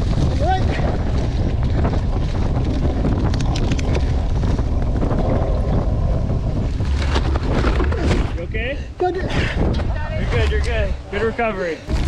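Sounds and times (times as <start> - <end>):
wind buffeting microphone: 0.0 - 12.0
faint clicks: 3.2 - 4.0.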